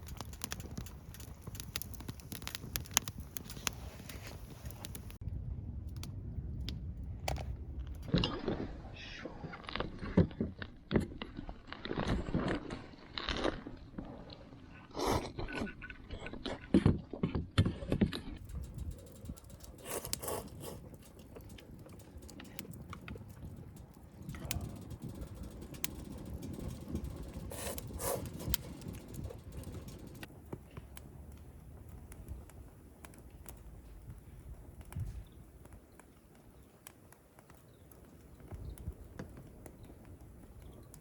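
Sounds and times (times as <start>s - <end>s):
hard objects scraping and clattering: 18.4s - 30.3s.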